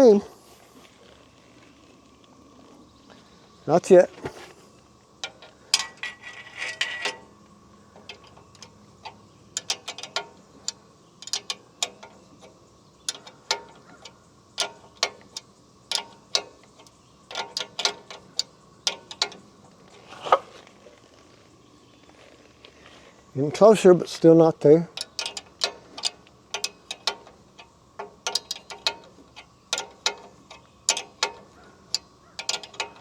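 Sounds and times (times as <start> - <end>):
faint hum: 0.0 - 33.0
wrench clicking on bolt: 8.0 - 19.5, 24.9 - 33.0.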